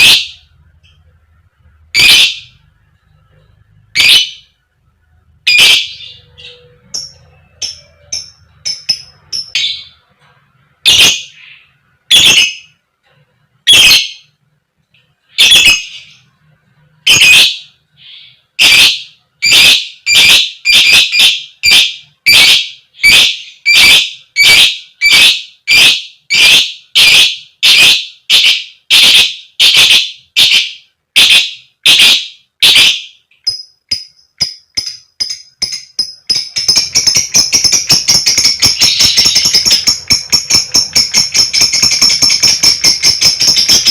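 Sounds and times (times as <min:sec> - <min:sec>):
faint high chirps: 0:00.0 - 0:12.8
lovebird harsh calls: 0:01.9 - 0:02.6, 0:04.0 - 0:04.5, 0:05.5 - 0:10.0, 0:10.8 - 0:12.7, 0:13.7 - 0:14.3, 0:15.3 - 0:16.2, 0:17.1 - 0:33.6, 0:34.4 - 0:43.9.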